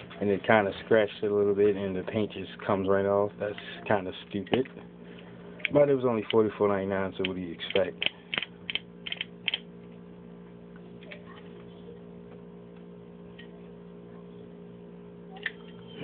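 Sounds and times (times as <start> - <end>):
low electrical hum: 0.0 - 16.0
handling clicks and taps: 7.2 - 9.6.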